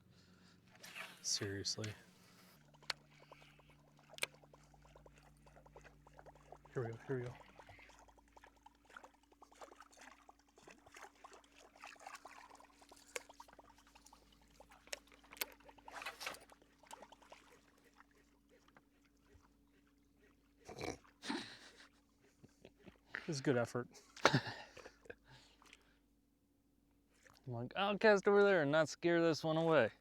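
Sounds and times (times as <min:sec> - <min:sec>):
low hum: 0:00.0 - 0:09.4
water splashing and lapping: 0:00.0 - 0:23.4, 0:24.0 - 0:26.0, 0:27.0 - 0:27.5
short splash: 0:00.7 - 0:18.0.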